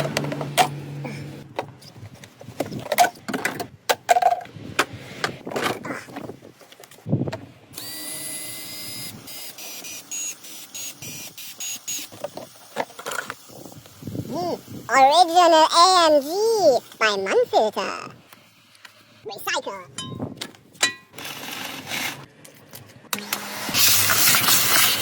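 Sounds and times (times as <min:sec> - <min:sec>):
cordless power drill whining: 0:07.8 - 0:12.3.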